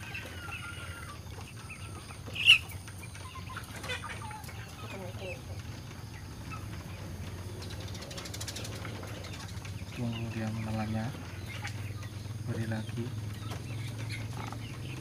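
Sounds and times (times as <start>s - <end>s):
chicken squawk: 0.0s - 9.7s, 10.6s - 12.3s
chicken soft gliding calls: 0.0s - 15.0s.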